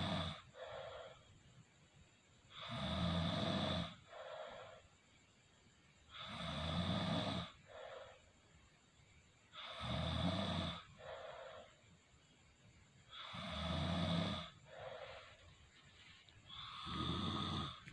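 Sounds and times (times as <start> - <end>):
person snoring: 13.2 - 15.3, 16.5 - 17.9.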